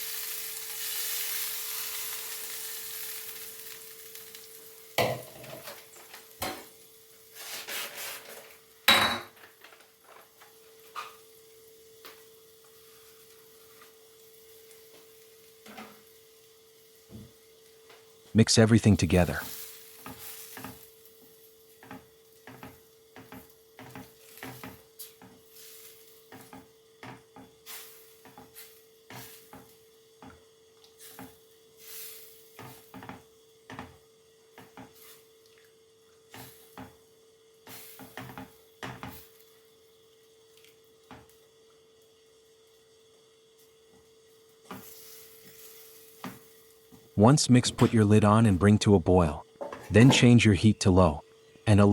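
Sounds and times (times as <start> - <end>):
utensil scraping a pan: 7.3 - 8.5
faint hum: 41.6 - 51.9.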